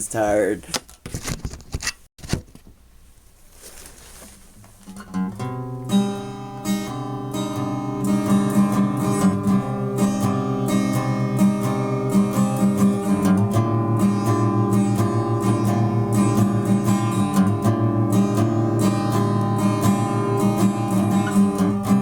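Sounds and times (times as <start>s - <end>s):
guitar strummed and picked: 5.0s - 22.0s.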